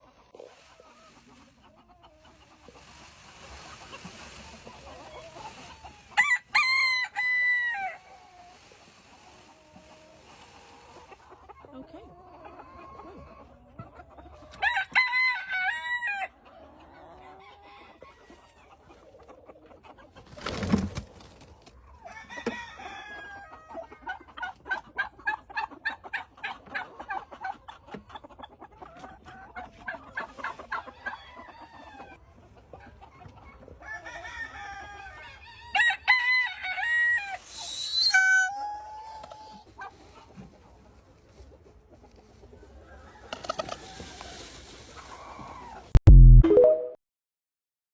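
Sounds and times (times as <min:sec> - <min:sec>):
hen clucking: 0:00.0 - 0:07.4, 0:08.0 - 0:14.6, 0:23.6 - 0:33.8
rooster crowing: 0:06.2 - 0:08.0.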